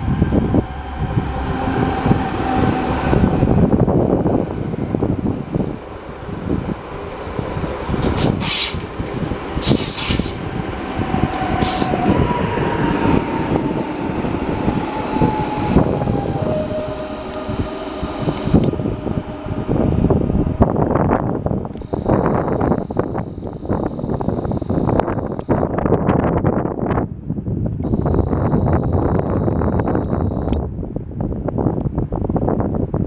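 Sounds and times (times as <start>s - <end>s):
bursts of hiss: 8.0s - 10.6s, 11.3s - 12.2s.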